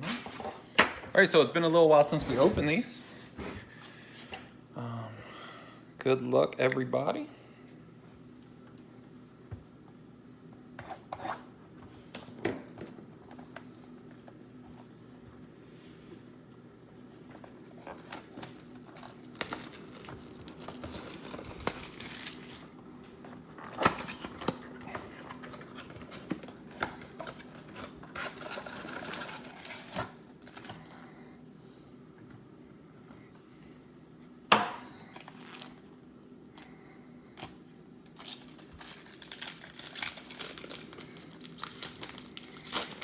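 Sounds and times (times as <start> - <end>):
wrapper rustling and tearing: 17.7 - 24.4, 27.1 - 30.7, 38.2 - 43.0.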